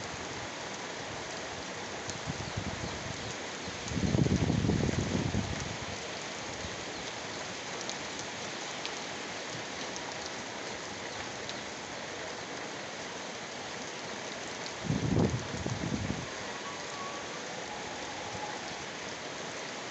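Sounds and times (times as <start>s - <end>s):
heavy rain falling: 0.0s - 19.9s
faint raindrop ticks: 0.6s - 2.6s, 3.2s - 5.7s, 6.5s - 11.8s.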